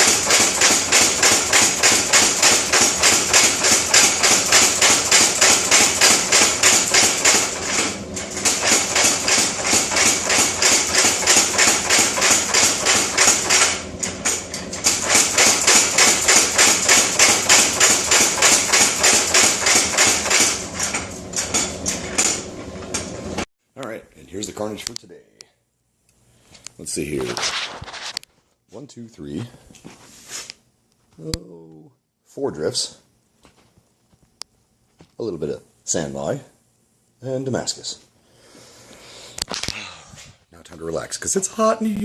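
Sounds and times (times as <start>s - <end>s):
power hammer striking steel: 0.0s - 22.4s.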